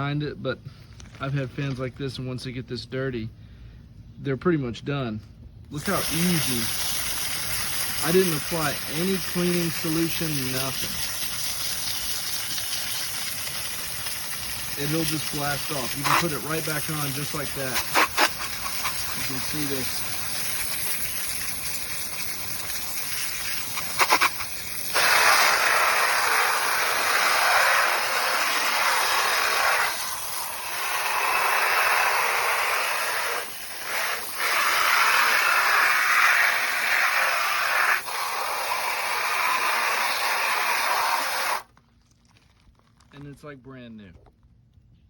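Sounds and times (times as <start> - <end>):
water jet spraying: 5.8 - 41.7.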